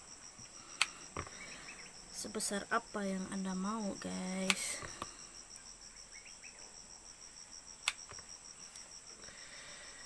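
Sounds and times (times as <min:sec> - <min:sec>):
continuous high whine: 0:00.0 - 0:10.0
insects chirping in pulsing trill: 0:00.0 - 0:10.0
sharp click: 0:07.8 - 0:08.8.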